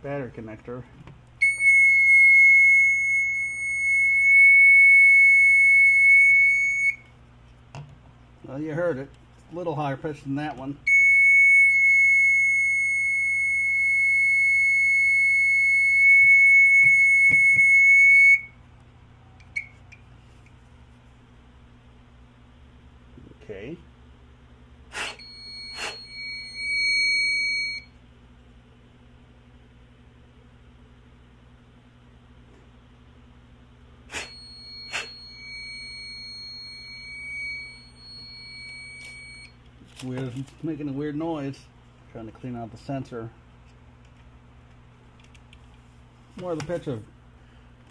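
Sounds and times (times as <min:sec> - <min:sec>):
smoke alarm high-pitched tone: 0:01.4 - 0:07.1, 0:10.9 - 0:18.6, 0:25.0 - 0:28.0, 0:34.2 - 0:39.6.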